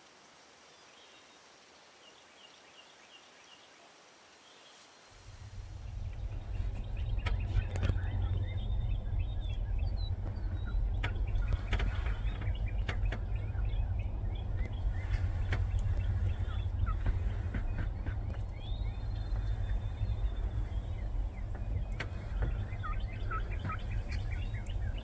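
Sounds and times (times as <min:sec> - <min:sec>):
songbirds chirping: 0:00.0 - 0:25.0
steady low rumble: 0:05.1 - 0:25.0.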